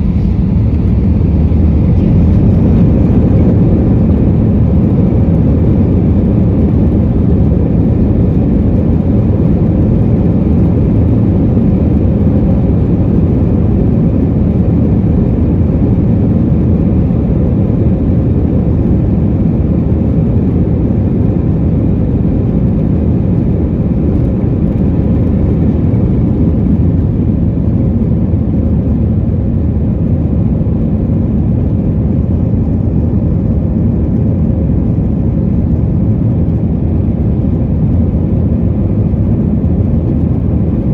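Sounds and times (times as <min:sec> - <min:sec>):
airflow noise: 0:00.0 - 0:16.0
jet engines roaring in cabin: 0:00.0 - 0:40.9.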